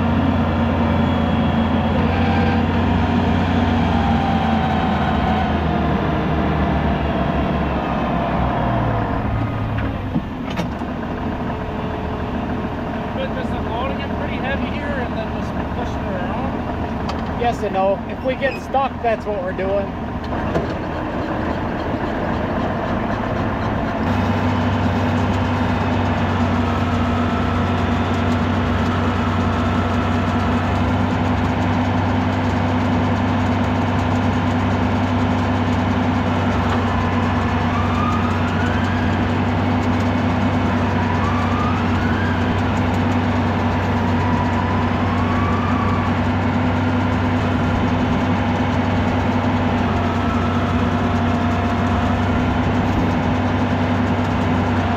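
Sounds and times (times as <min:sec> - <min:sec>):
diesel tractor engine running: 0:00.0 - 0:54.9.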